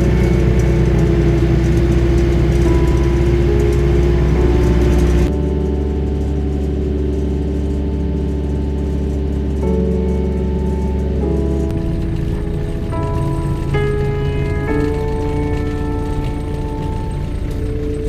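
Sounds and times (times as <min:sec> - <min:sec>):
deep low drone: 0:00.0 - 0:18.0
synth chords: 0:00.0 - 0:18.0.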